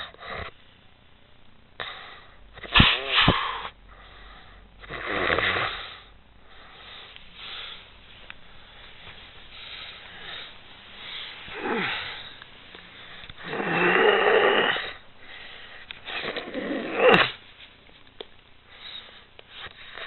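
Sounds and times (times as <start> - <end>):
woman snoring: 4.8 - 6.1, 11.5 - 12.3, 13.4 - 15.0, 16.1 - 17.4.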